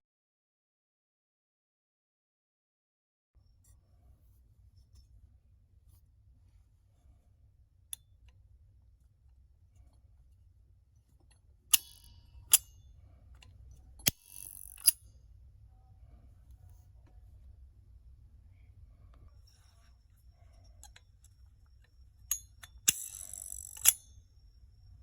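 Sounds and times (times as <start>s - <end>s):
faint low hum: 3.4s - 25.0s
sharp metallic clicks: 11.7s - 12.8s, 14.0s - 15.0s, 22.2s - 24.2s.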